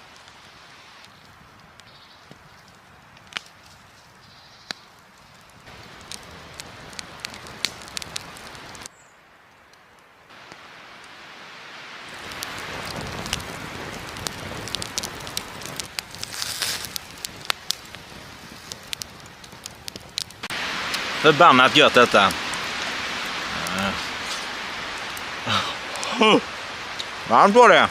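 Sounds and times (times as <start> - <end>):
campfire crackling and popping: 0.0 - 27.9.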